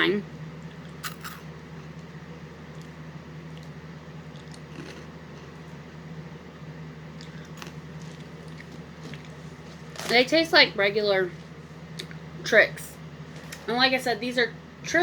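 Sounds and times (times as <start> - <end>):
steady low hum: 0.0 - 15.0
cereal crunching: 2.8 - 5.6, 7.2 - 10.3.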